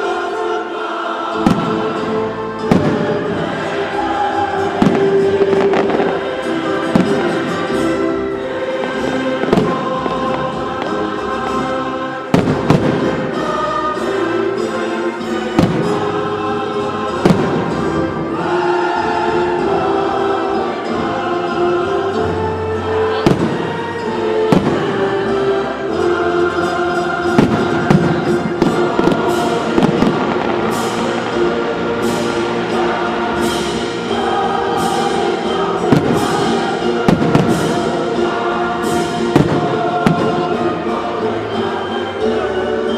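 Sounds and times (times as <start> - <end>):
choir singing: 0.0 - 42.9
loud music: 0.0 - 42.9
fireworks bangs: 1.4 - 13.9, 15.5 - 16.3, 17.1 - 18.4, 23.1 - 25.4, 27.2 - 34.0, 34.6 - 41.0.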